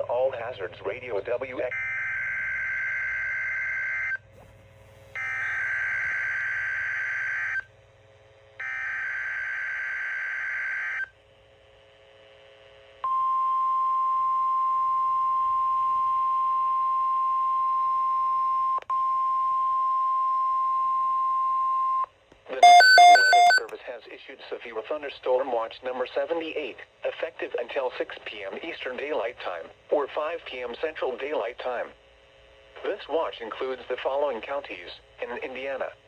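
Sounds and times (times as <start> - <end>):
screeching digital data tones: 22.6 - 23.6
steady single-pitched alarm tone: 22.6 - 23.6.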